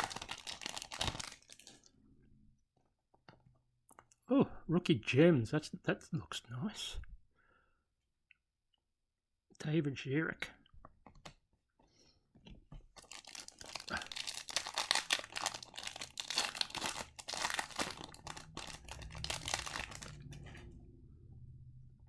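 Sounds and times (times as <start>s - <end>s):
wrapper tearing and crinkling: 0.0s - 1.8s, 12.9s - 20.6s.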